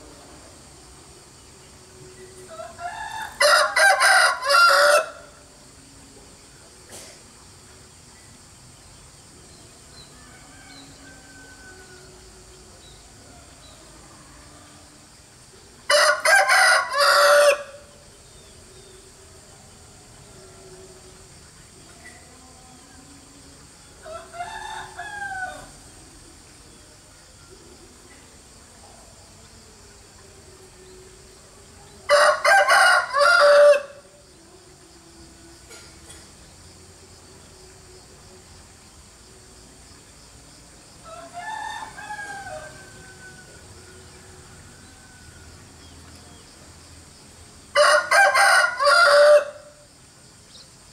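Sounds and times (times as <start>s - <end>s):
rooster crowing: 2.5s - 5.4s, 10.1s - 12.3s, 15.9s - 17.9s, 24.0s - 25.8s, 32.1s - 34.1s, 41.0s - 45.6s, 47.7s - 49.8s.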